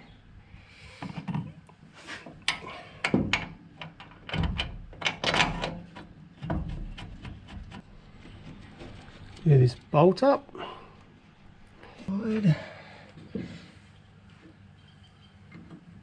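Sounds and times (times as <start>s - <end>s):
metal pedal assembly knocking and scraping: 2.5s - 7.8s.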